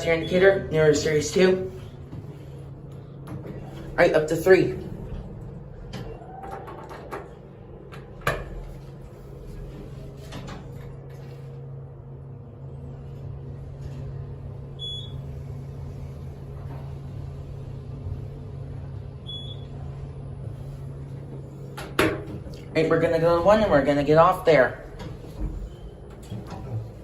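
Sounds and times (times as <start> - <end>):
elevator doors clunking: 0.0 - 9.0, 21.2 - 27.0
elevator low hum: 0.0 - 27.0.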